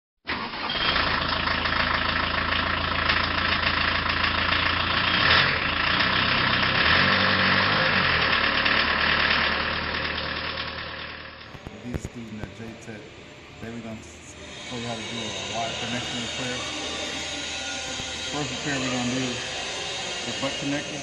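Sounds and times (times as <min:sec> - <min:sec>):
machine low hum: 0:11.4 - 0:21.0
machine hiss: 0:13.6 - 0:21.0.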